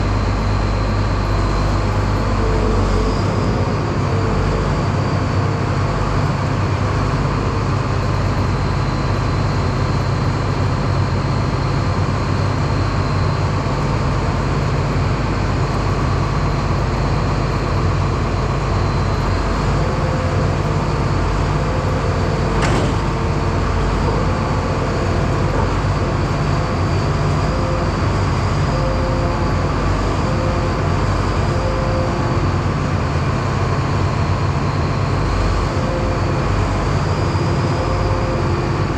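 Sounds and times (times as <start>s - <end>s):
faint high whine: 0.0s - 6.4s, 33.9s - 38.9s
combine engine hum: 0.0s - 38.9s.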